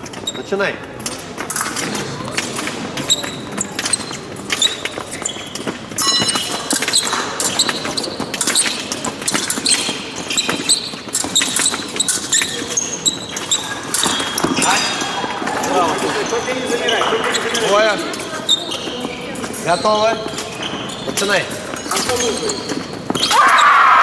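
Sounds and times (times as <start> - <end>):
shoes stamping and squeaking: 0.0 - 24.0.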